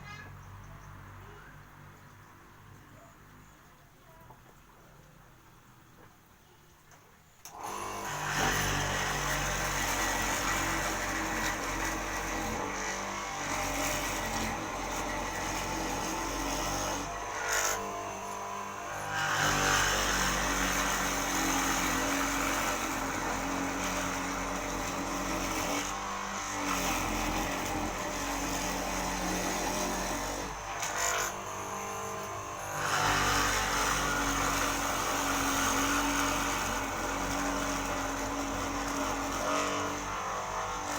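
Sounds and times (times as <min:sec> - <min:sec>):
mortising machine motor cutting: 0:07.5 - 0:40.9.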